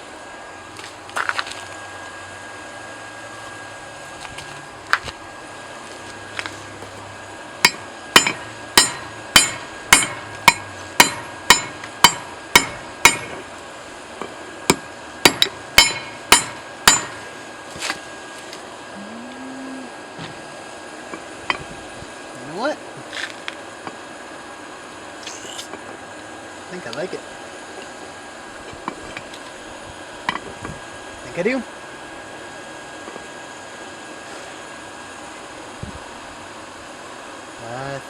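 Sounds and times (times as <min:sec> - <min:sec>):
hammer striking steel: 0:07.6 - 0:13.4, 0:14.7 - 0:17.2.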